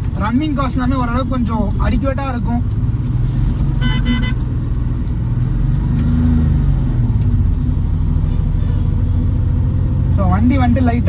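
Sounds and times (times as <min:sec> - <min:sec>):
car horn toot: 0:03.8 - 0:04.5, 0:08.1 - 0:09.2.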